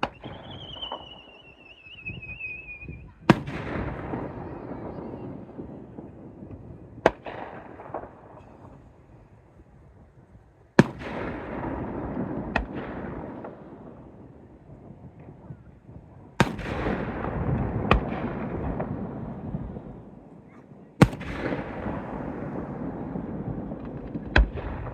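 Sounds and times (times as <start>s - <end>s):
firework shells bursting: 21.0s - 22.4s
rolling rumble and crackle: 23.2s - 24.9s.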